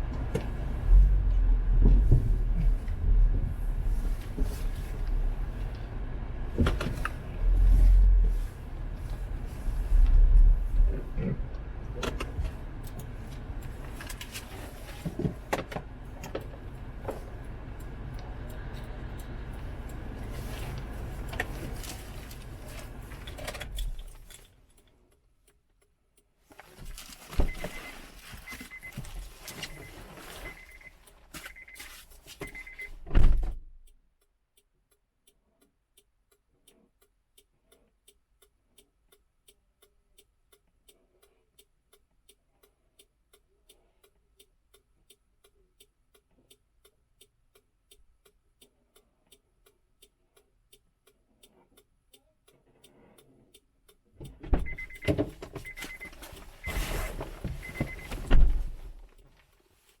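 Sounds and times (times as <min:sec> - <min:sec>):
turn signal ticking: 0:00.0 - 1:00.0
rustling: 0:26.4 - 0:33.0, 0:54.8 - 1:00.0
door-open warning chime: 0:27.3 - 0:33.0, 0:54.6 - 0:58.4
car door shutting thud: 0:33.0 - 0:33.7, 0:54.4 - 0:59.0.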